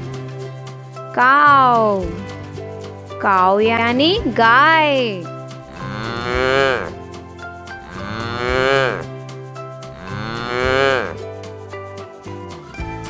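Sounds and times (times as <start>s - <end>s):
cow mooing: 5.7s - 7.0s, 7.8s - 9.1s, 9.9s - 11.2s.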